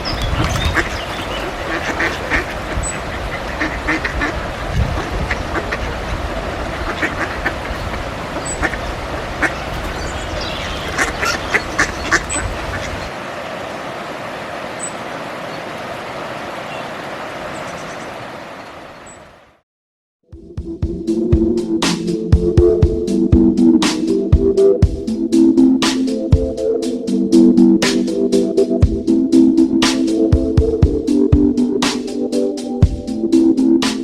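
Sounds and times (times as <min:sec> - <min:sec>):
ducks quacking: 0:00.0 - 0:13.2.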